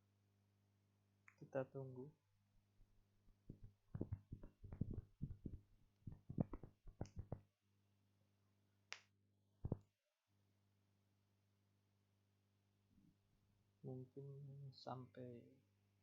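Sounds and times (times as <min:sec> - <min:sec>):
quick faint clicks and taps: 0:03.5 - 0:07.4.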